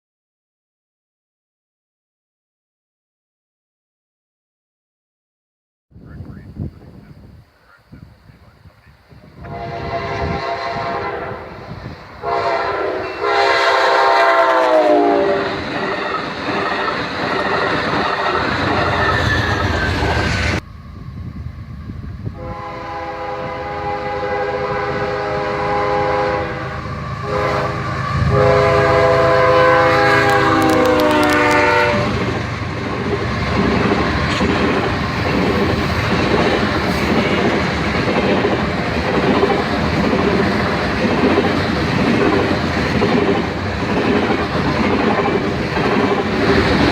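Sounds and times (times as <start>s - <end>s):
locomotive air horn blasts: 9.4s - 11.6s, 12.2s - 15.6s, 22.4s - 32.2s
train wheels clattering on rails: 15.4s - 20.6s, 30.2s - 46.9s.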